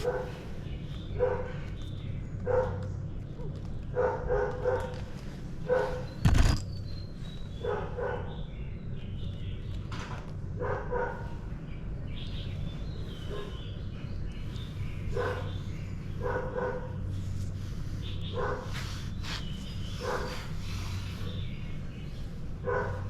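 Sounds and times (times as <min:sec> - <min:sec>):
dog barking: 0:00.0 - 0:00.5, 0:01.1 - 0:01.6, 0:02.4 - 0:06.1, 0:07.6 - 0:08.4, 0:10.6 - 0:11.4, 0:13.2 - 0:13.7, 0:15.1 - 0:17.0, 0:18.3 - 0:18.8, 0:20.0 - 0:20.5, 0:22.6 - 0:23.0.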